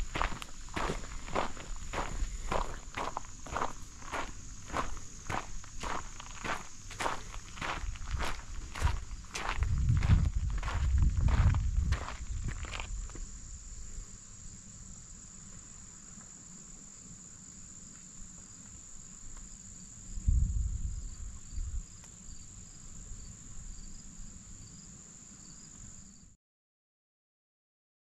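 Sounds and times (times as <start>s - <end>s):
footsteps: 0.0s - 13.3s
insects trilling: 0.0s - 26.3s
low rumble: 8.0s - 13.1s.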